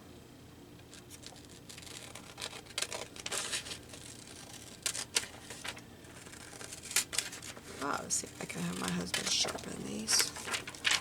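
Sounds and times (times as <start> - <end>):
paper rustling: 0.8 - 11.0
scissors snipping paper: 0.9 - 11.0.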